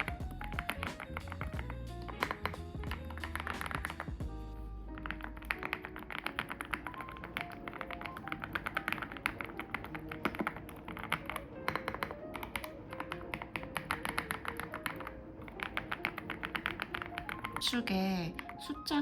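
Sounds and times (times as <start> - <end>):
background music: 0.0 - 19.0
mechanical keyboard clicking: 5.0 - 18.6.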